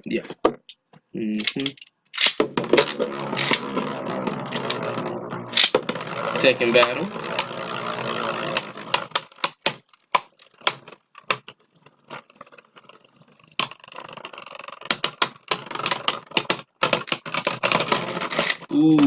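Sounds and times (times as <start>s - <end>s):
spinning tops whirring: 2.2s - 9.6s.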